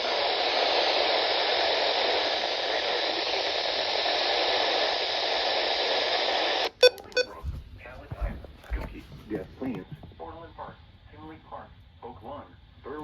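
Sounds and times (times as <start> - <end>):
radio static hiss: 0.0 - 7.3.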